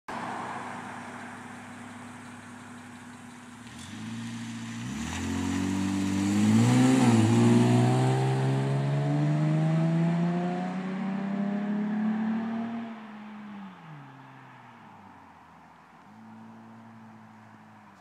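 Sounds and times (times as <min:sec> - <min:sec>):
car exhaust accelerating: 0:00.1 - 0:13.8.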